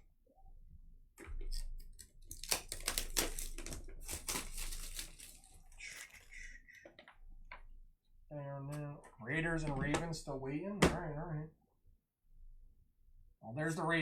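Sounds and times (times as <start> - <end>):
foil wrappers crinkling: 1.5 - 6.8
cards rustling: 2.3 - 6.8.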